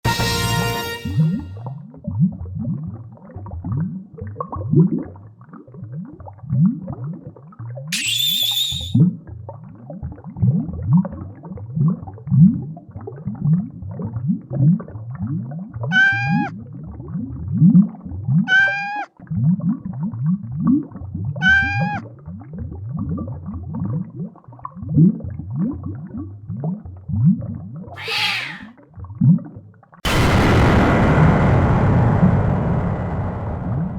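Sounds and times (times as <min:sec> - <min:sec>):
cartoon high drawn-out cry: 0:15.9 - 0:16.5, 0:18.5 - 0:19.1, 0:21.4 - 0:22.0, 0:28.0 - 0:28.7
cartoon low rising grunts: 0:28.0 - 0:28.7.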